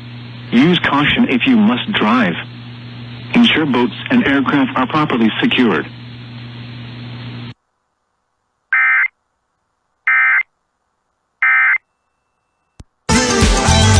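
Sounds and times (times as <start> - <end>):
radio hiss: 0.3 - 7.6
warbling data bursts: 8.7 - 9.1, 10.1 - 10.5, 11.4 - 12.7.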